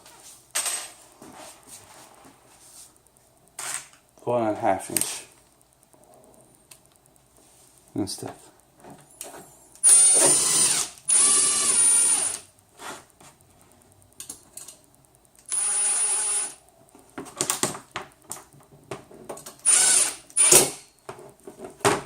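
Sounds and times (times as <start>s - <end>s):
power drill whining: 9.8s - 12.4s, 15.5s - 16.6s, 19.6s - 20.8s.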